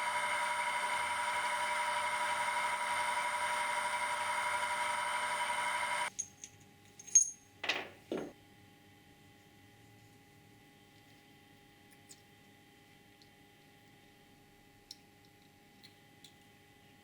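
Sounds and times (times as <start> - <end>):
power tool motor whining: 0.0 - 6.1.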